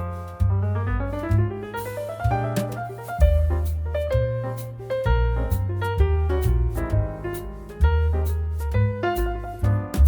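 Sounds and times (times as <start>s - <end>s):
piano tune with bass and beat: 0.0s - 10.0s.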